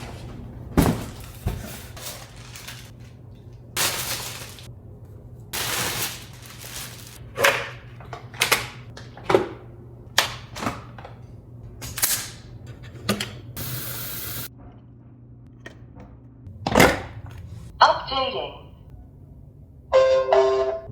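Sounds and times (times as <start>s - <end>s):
rustling: 5.6s - 7.2s.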